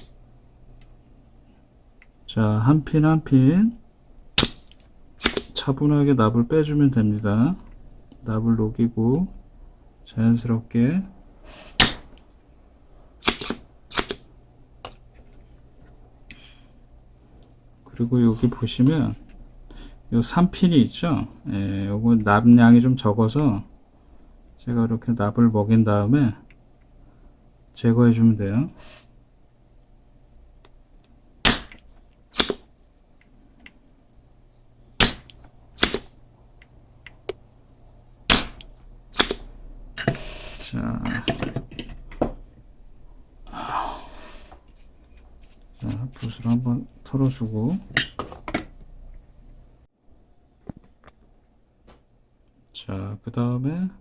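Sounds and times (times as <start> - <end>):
desoldering pump snapping: 31.4 - 32.6, 35.0 - 37.4, 38.3 - 39.4.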